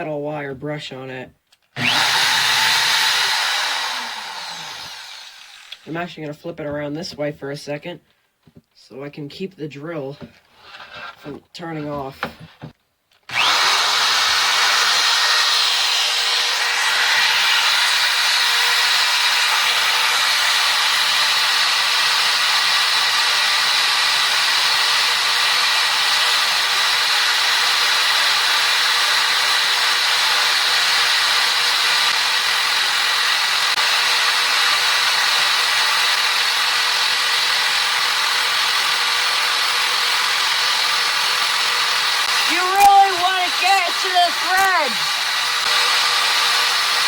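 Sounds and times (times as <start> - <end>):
power drill motor whine: 1.8 - 5.9, 13.3 - 47.0
wire brush scrubbing metal: 42.4 - 45.1.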